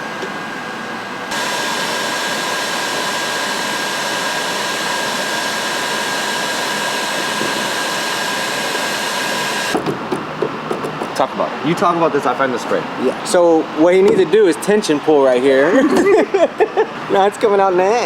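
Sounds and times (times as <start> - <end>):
electric blower whining: 0.1 - 9.8.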